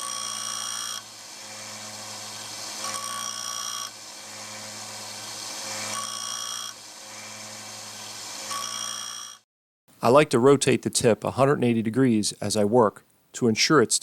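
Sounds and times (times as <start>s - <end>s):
sander motor hum: 0.0s - 9.4s.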